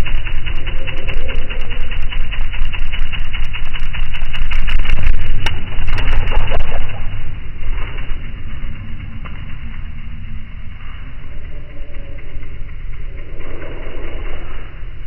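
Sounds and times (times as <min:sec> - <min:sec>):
hummingbird chipping calls: 0:00.0 - 0:02.9, 0:06.3 - 0:14.4
low hum: 0:00.0 - 0:15.0.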